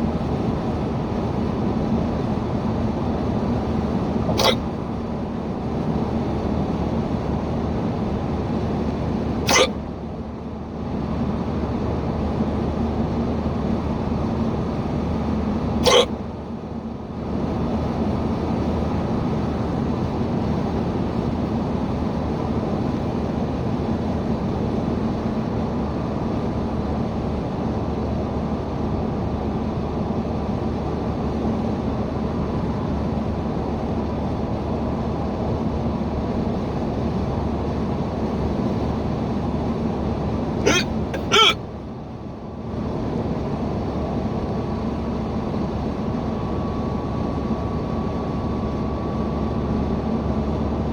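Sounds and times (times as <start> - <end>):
car cabin road and engine noise: 0.1 - 25.7
person hiccuping: 4.3 - 4.7, 9.5 - 9.8, 15.8 - 16.2, 40.7 - 41.6.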